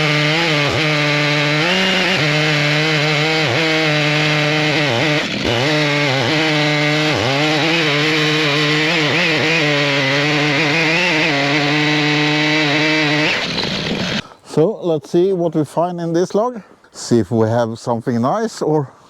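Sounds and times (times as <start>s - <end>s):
chainsaw cutting log: 0.0s - 14.3s.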